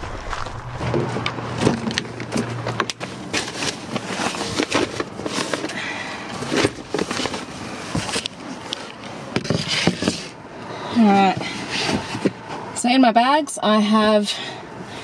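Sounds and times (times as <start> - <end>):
heavy bags knocking and rustling: 0.0 - 5.8.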